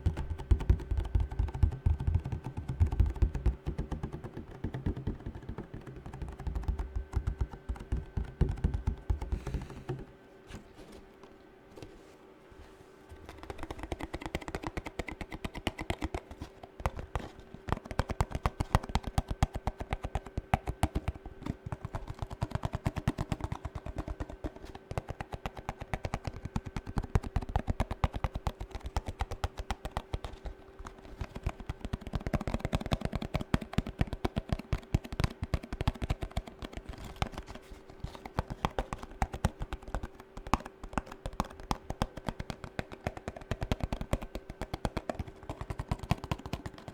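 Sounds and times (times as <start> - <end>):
fingernail tapping: 0.0 - 10.1
faint steady hum: 0.0 - 46.9.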